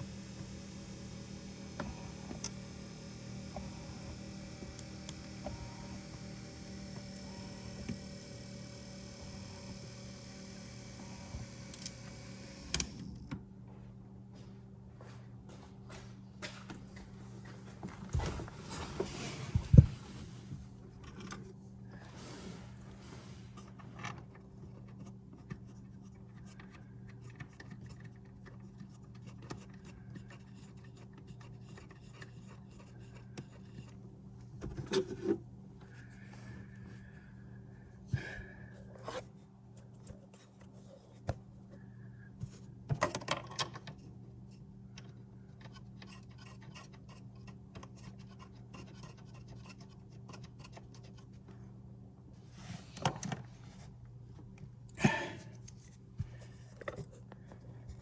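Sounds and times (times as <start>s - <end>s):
steady low hum: 0.0s - 43.0s, 43.8s - 58.0s
small clicks and scraping: 1.6s - 13.4s, 20.9s - 21.6s, 23.5s - 36.1s, 39.0s - 41.8s, 42.9s - 51.6s, 55.5s - 58.0s.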